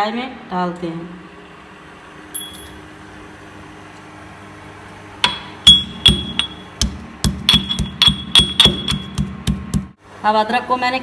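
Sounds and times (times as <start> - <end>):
pestle pounding in mortar: 5.2 - 10.0.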